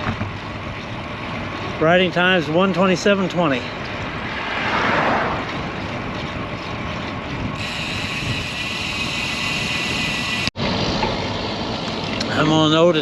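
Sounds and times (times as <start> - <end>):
steady high whine: 7.5 - 13.0.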